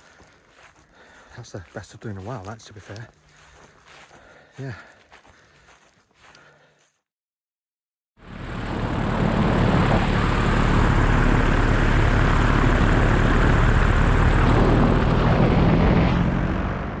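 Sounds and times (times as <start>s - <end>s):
paramotor engine running: 8.2s - 16.9s.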